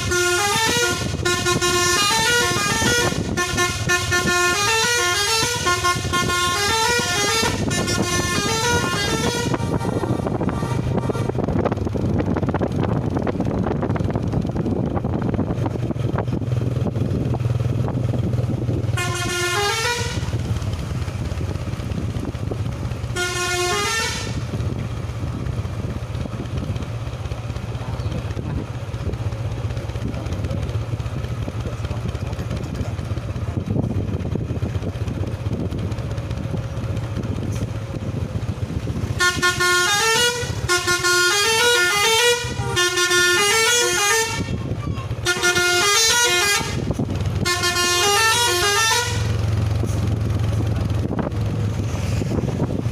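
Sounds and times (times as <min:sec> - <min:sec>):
bus horn playing melodies: 0:00.0 - 0:11.3, 0:18.8 - 0:20.8, 0:23.0 - 0:24.8, 0:38.8 - 0:50.0
low engine hum: 0:00.0 - 0:52.9.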